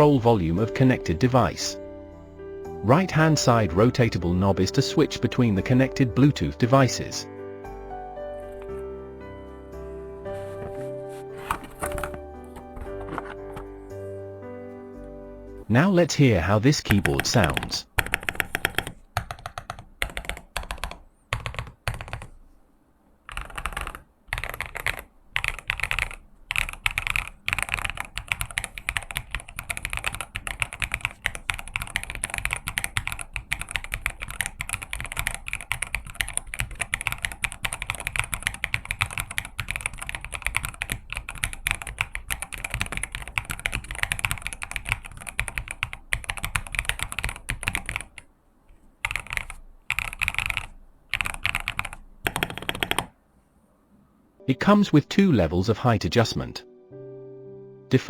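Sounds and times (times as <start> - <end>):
fast typing on mechanical keyboard: 17.0 - 22.4, 23.2 - 48.3, 49.0 - 53.2.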